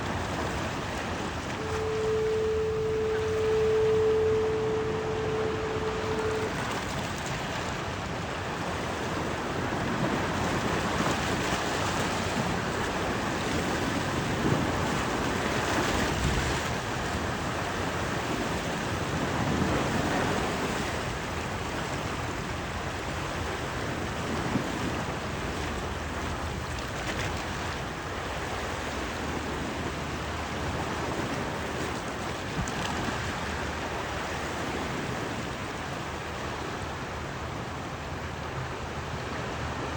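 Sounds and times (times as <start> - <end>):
waves at the shore: 0.0 - 39.9
wind: 0.0 - 39.9
steady horn tone: 1.4 - 7.0.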